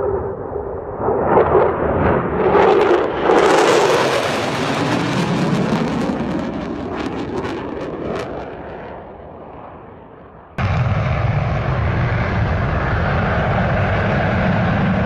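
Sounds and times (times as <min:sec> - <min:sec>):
fighter jet roaring past: 0:00.0 - 0:15.0.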